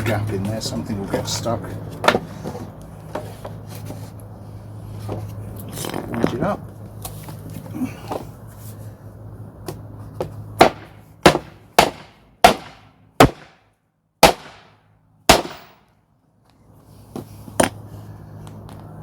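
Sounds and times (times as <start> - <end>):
hammer driving nails into wood: 10.6 - 13.6, 15.3 - 15.8.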